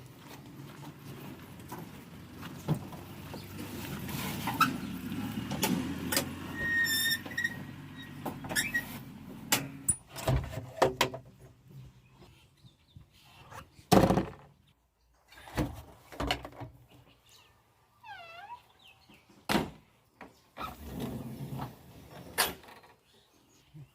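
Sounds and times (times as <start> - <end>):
backhoe engine drone: 1.0 - 9.9
short squeal: 6.5 - 9.0.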